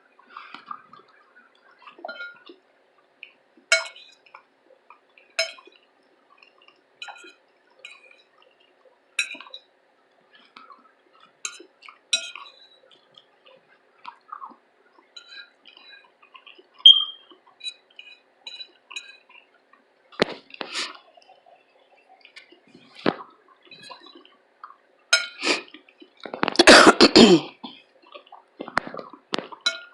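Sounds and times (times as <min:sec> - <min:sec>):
cutlery clinking on plate: 0:03.7 - 0:04.0, 0:09.2 - 0:09.5, 0:11.5 - 0:12.5, 0:25.2 - 0:25.4, 0:29.4 - 0:29.9.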